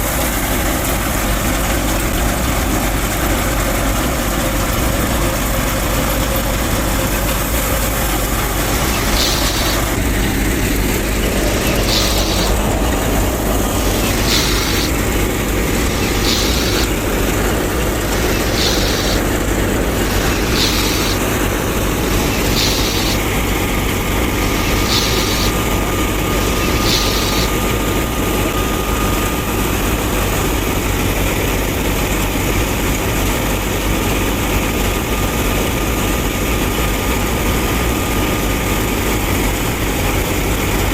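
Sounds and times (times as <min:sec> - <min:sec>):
machine running steadily: 0:00.0 - 0:40.9
hissing pulse: 0:07.9 - 0:28.0.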